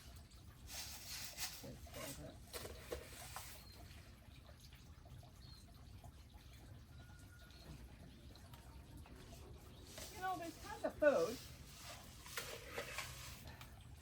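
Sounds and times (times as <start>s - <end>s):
small birds chirping: 5.1s - 5.9s, 6.6s - 12.0s
rustling: 9.9s - 13.6s.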